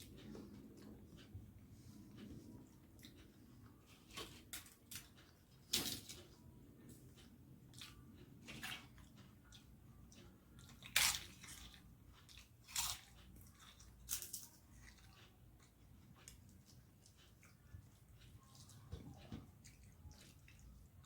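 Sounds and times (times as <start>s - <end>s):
soft chewing clicks: 0.0s - 21.0s.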